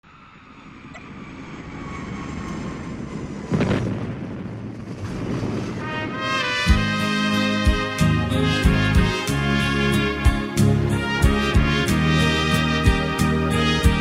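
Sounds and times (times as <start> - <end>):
airplane engine droning overhead: 0.0 - 14.0
music with brass: 5.8 - 14.0.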